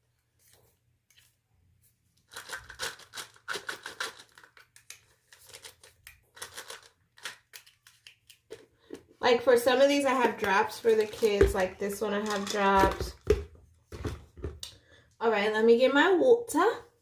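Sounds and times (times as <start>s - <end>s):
packaging rustling: 2.3s - 8.9s
bottles clicking: 10.1s - 14.7s.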